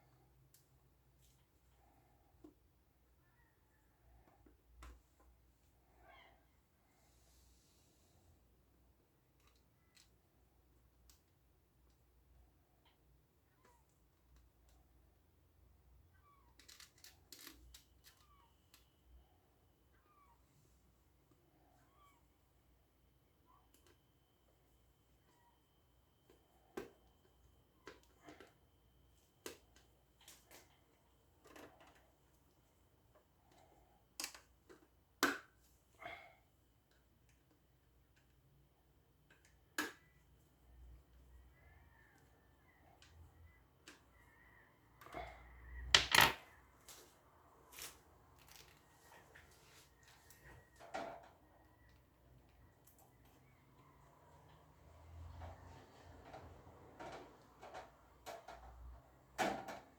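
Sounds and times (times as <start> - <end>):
fan parts clicking and knocking: 46.0 - 46.4.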